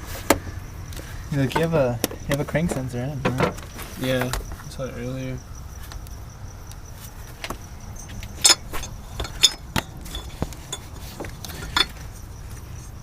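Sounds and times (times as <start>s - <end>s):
metal tools clinking on engine parts: 7.4s - 12.9s.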